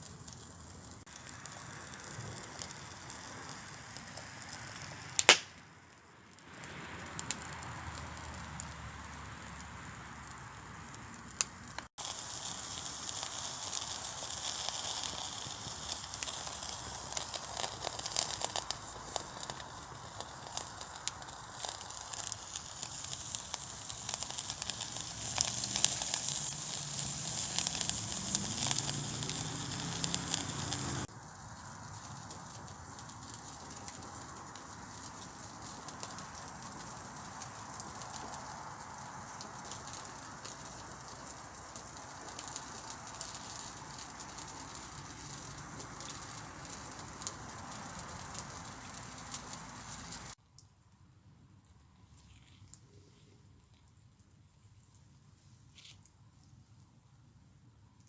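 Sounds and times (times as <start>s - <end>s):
campfire crackling and popping: 0.0s - 50.7s.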